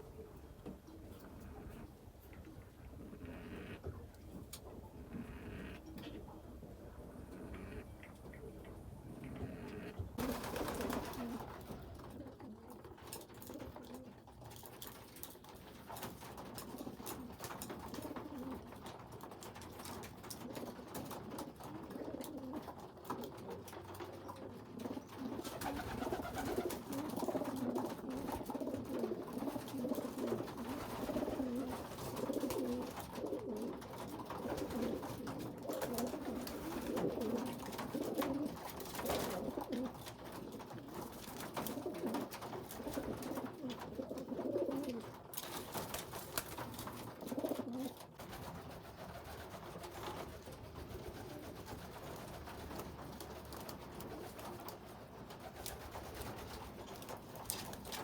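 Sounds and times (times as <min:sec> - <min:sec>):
pigeons cooing: 0:00.0 - 0:04.0, 0:04.9 - 0:06.4, 0:07.0 - 0:14.2, 0:16.5 - 0:19.2, 0:20.3 - 0:48.1.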